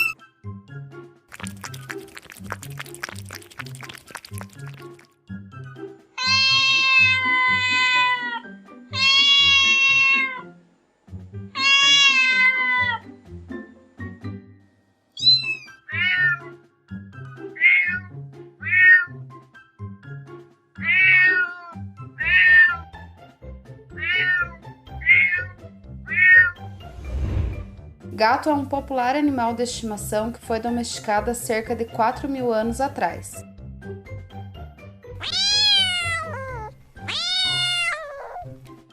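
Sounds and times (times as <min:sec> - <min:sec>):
background music: 0:00.0 - 0:38.9
cat chirp: 0:06.2 - 0:10.4, 0:11.6 - 0:13.0, 0:15.2 - 0:16.5, 0:17.6 - 0:19.2, 0:20.8 - 0:22.8, 0:24.0 - 0:26.6, 0:35.2 - 0:38.6
cat meowing: 0:06.2 - 0:10.5, 0:11.6 - 0:13.0, 0:15.2 - 0:16.5, 0:17.6 - 0:19.2, 0:20.8 - 0:22.9, 0:24.0 - 0:26.6, 0:35.2 - 0:38.6.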